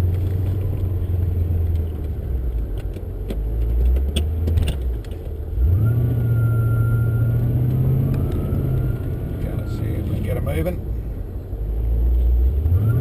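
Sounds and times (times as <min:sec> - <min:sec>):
car engine revving: 0:03.6 - 0:13.0.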